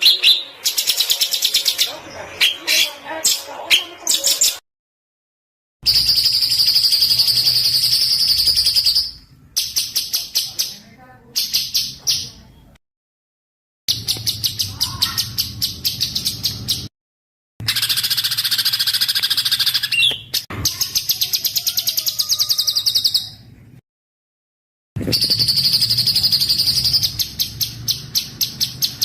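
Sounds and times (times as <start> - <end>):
bird sharp repeated notes: 0.0 - 4.6, 5.8 - 12.5, 13.9 - 16.9, 17.6 - 21.7, 25.0 - 29.0
birds chattering: 0.0 - 4.6, 13.9 - 16.9.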